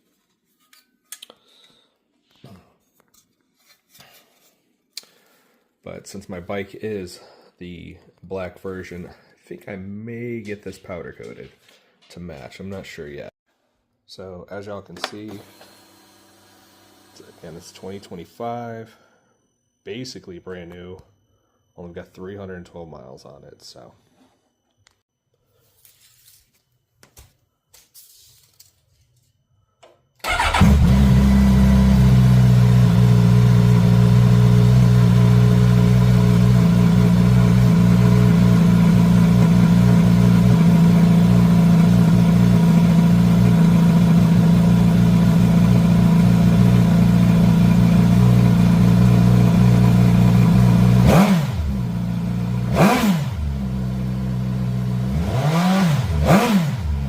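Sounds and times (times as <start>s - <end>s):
motorcycle engine starting: 30.2s - 57.0s.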